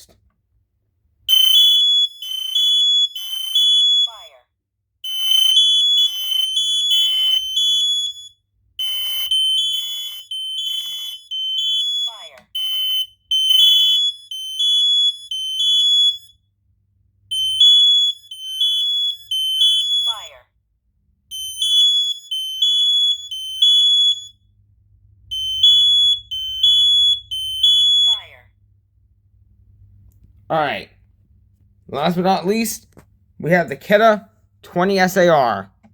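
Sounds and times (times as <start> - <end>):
high-pitched smoke alarm beeps: 1.3 - 4.3, 5.0 - 16.4, 17.3 - 20.3, 21.3 - 24.5, 25.3 - 28.3.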